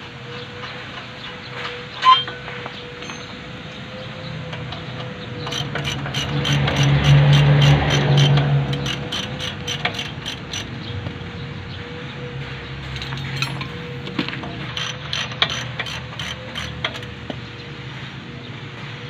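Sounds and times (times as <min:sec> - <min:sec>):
ratchet wrench clicking: 0:05.4 - 0:10.8, 0:14.6 - 0:17.2.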